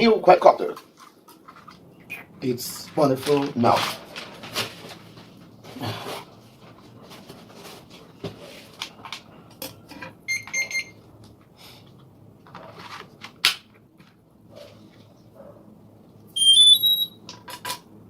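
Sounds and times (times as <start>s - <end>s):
rapid high electronic beeps: 16.4s - 17.2s.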